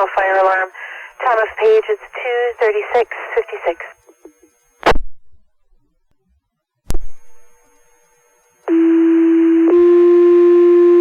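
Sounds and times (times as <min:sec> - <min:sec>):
radio transmitter clicks: 0:00.0 - 0:05.1.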